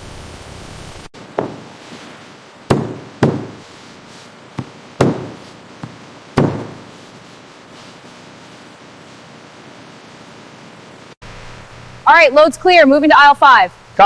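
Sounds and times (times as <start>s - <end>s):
wooden planks knocking together: 1.2s - 7.2s.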